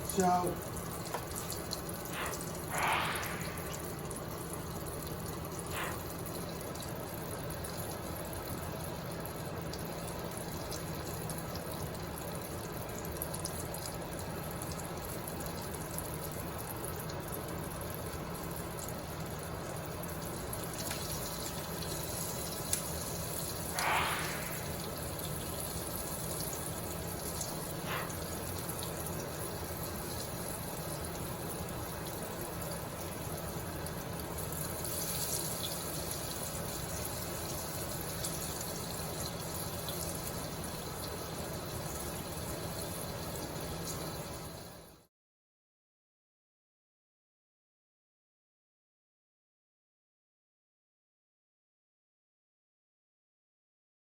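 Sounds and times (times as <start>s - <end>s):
food sizzling in hot grease: 1.2s - 4.0s, 20.7s - 28.2s, 34.6s - 40.0s.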